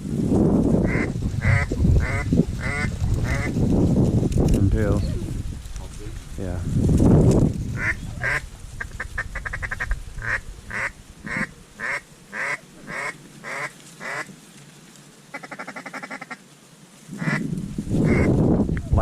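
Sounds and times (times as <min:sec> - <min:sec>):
duck call quacks: 0:00.9 - 0:03.5, 0:07.8 - 0:14.3, 0:15.3 - 0:16.4, 0:17.2 - 0:17.4, 0:18.0 - 0:18.3.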